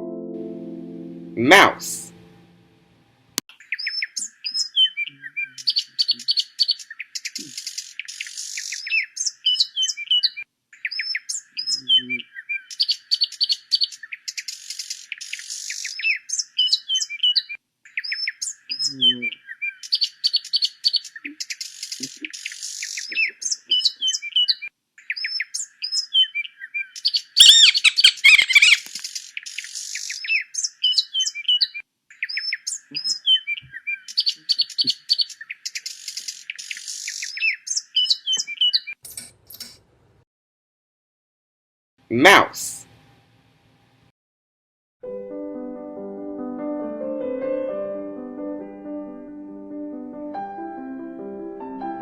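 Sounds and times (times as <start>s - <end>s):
mice squeaking: 27.4s - 30.3s.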